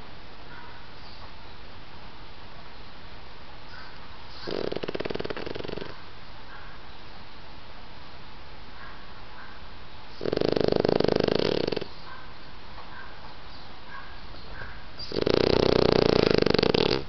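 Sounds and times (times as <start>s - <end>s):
dog snoring: 4.3s - 6.0s, 10.1s - 11.9s, 15.0s - 17.0s.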